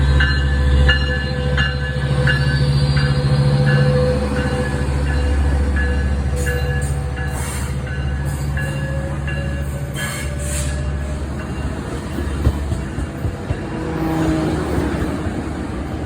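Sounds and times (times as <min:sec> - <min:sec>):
train wheels squealing: 0:00.0 - 0:12.5
diesel locomotive rumbling: 0:00.0 - 0:16.0.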